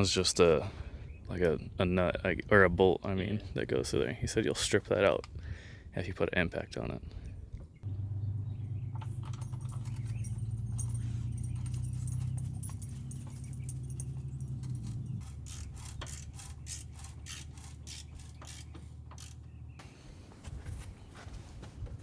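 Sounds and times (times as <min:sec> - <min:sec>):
low hum: 0:07.8 - 0:16.8
tools clinking on bolts: 0:09.0 - 0:19.4
ratchet wrench clicking: 0:14.8 - 0:19.4.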